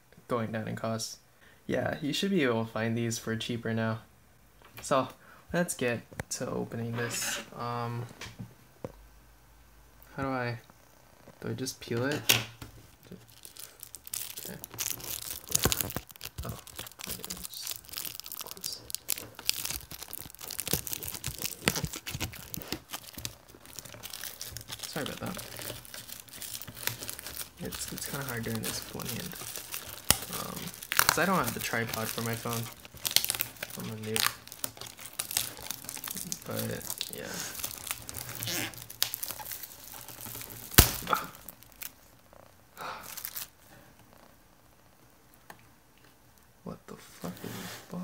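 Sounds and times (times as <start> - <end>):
plastic wrapping crinkling: 11.9 - 42.2, 42.8 - 43.7
packaging rustling and scraping: 12.8 - 42.0, 43.0 - 43.5.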